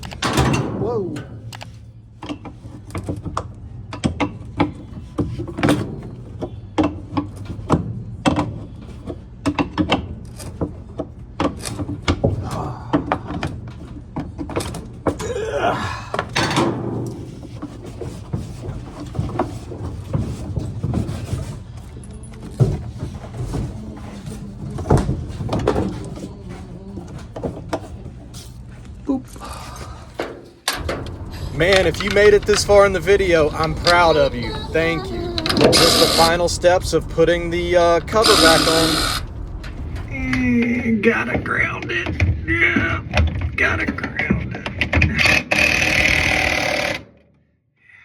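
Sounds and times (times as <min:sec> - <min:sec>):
tools and parts clanking: 0:00.0 - 0:15.4, 0:16.1 - 0:29.0, 0:29.7 - 0:34.6
steady low hum: 0:12.2 - 0:44.7
scraping: 0:15.2 - 0:43.5.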